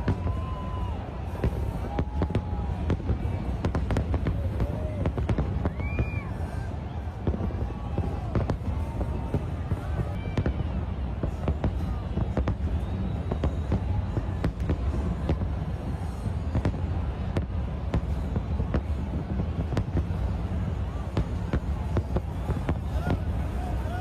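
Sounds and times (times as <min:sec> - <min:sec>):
fireworks bangs: 0:00.0 - 0:24.0.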